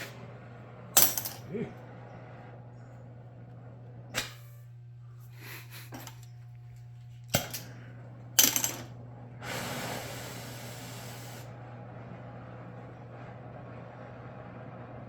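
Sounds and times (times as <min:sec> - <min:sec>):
gas torch hissing: 0:09.4 - 0:11.6.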